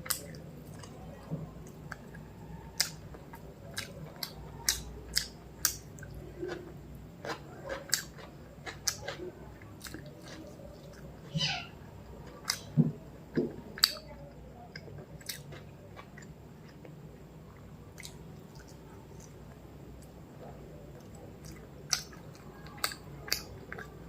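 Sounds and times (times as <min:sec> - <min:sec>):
person chewing food: 0:01.6 - 0:11.2, 0:14.7 - 0:24.0.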